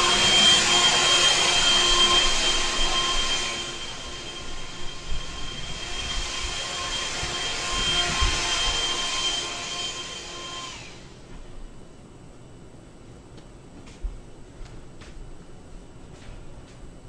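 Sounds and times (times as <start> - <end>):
vacuum cleaner motor whine: 0.0 - 11.6.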